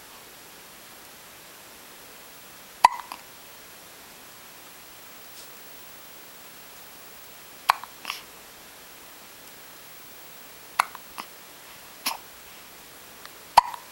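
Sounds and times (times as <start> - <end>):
baby hiccuping: 2.8 - 3.3, 7.6 - 8.2, 10.8 - 11.3, 12.0 - 12.3, 13.5 - 13.9.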